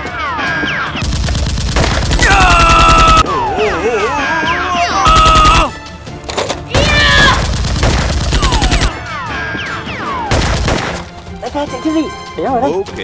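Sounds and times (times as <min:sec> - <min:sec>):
background music: 0:00.0 - 0:13.0.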